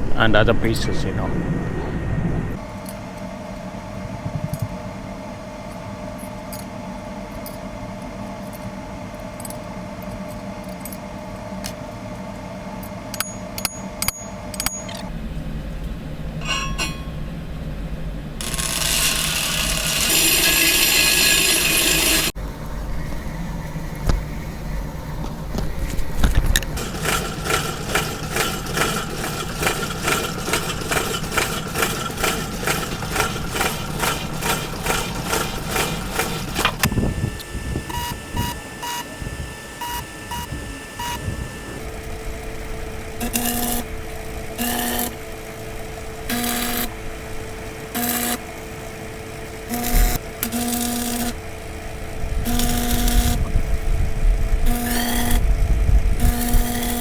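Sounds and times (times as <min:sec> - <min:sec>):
electrical hum: 0:00.0 - 0:57.0
held tone: 0:16.3 - 0:17.5
fast rhythmic machine clatter: 0:18.4 - 0:22.3, 0:26.6 - 0:36.9, 0:42.4 - 0:57.0
arc welder welding: 0:18.4 - 0:57.0.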